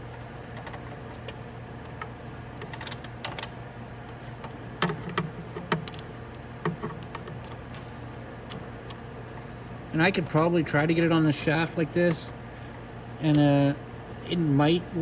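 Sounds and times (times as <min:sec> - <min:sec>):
metal chain clinking: 0:05.8 - 0:09.0.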